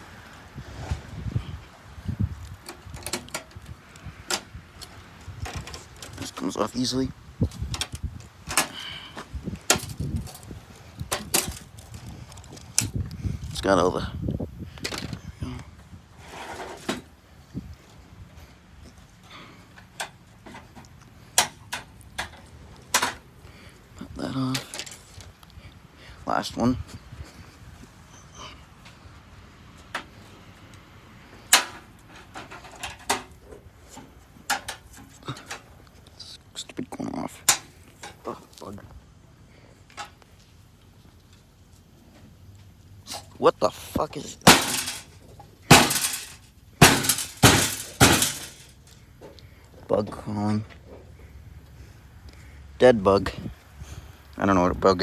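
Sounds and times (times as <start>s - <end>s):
plastic parts snapping: 11.1s - 11.8s, 44.5s - 45.1s, 45.7s - 48.7s.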